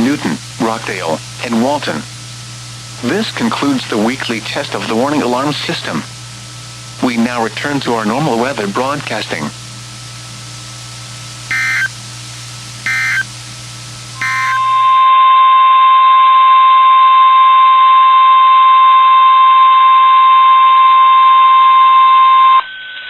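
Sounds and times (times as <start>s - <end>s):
digital data bursts: 11.5s - 11.9s, 12.9s - 13.3s, 14.2s - 15.0s
steady warning alarm tone: 11.5s - 12.0s, 12.8s - 13.3s, 14.2s - 23.0s.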